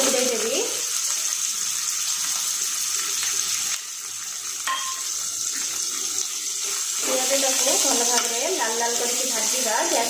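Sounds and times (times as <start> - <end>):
onions sizzling in hot oil: 0.0 - 10.0
sharp clink: 4.7 - 5.1.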